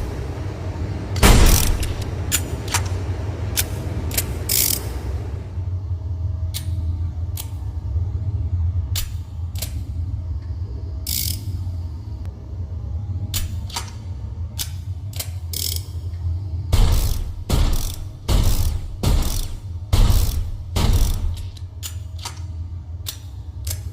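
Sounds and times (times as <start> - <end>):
loud noise: 0.0 - 5.6
steady low hum: 0.0 - 23.9
revolver mechanism clicking: 1.1 - 5.2, 11.0 - 11.6, 13.3 - 23.9.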